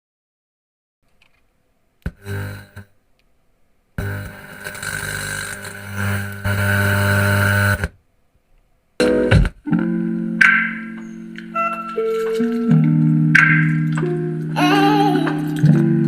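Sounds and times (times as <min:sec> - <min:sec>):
music through loudspeaker: 0:09.0 - 0:16.0.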